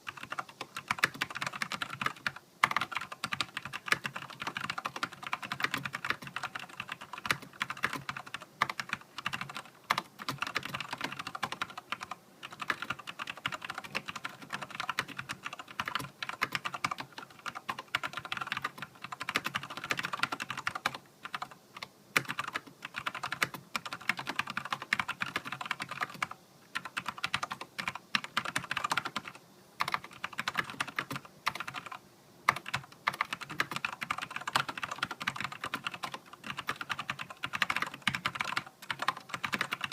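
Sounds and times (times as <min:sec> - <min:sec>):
mechanical keyboard typing: 0:00.1 - 0:39.9.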